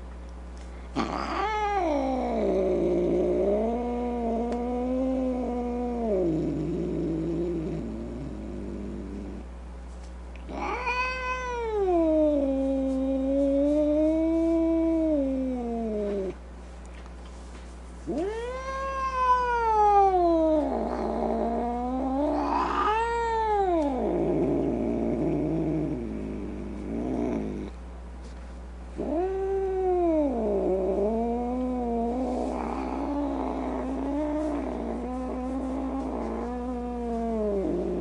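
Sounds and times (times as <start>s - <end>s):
cat growling: 0.9s - 9.5s, 10.5s - 16.4s, 18.1s - 27.8s, 29.0s - 38.0s
cat yowling: 1.0s - 2.4s, 10.5s - 12.5s, 18.1s - 24.0s.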